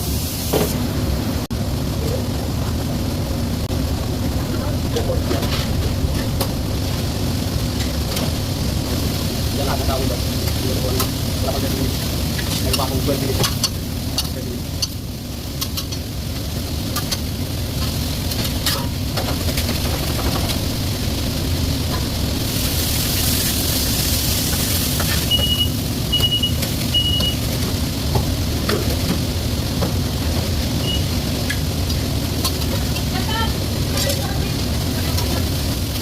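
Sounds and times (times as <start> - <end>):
low kitchen rumble: 0.0 - 36.0
loud hiss: 20.0 - 25.8.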